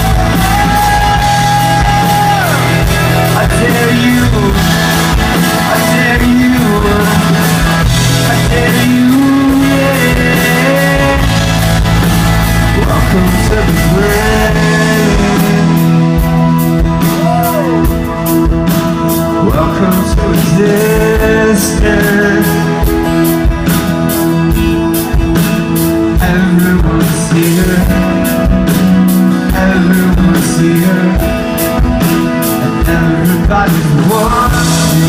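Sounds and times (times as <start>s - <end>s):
wordless singing: 0.0s - 11.8s, 12.6s - 16.2s
live rock band: 0.0s - 35.0s.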